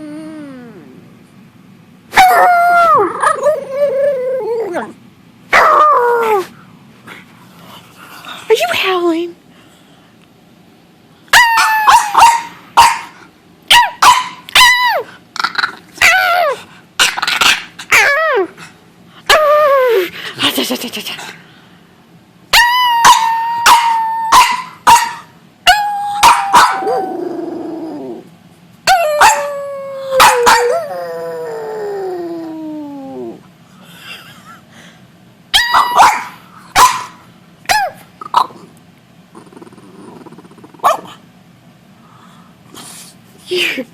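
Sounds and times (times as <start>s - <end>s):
dog barking and howling: 2.1s - 4.8s, 5.5s - 6.5s, 11.3s - 15.1s, 16.0s - 18.5s, 22.5s - 28.2s, 28.9s - 33.4s, 35.5s - 38.5s, 40.8s - 41.2s
dog howling: 11.3s - 12.3s, 22.5s - 24.6s, 25.7s - 28.2s, 28.9s - 33.4s, 35.6s - 36.3s.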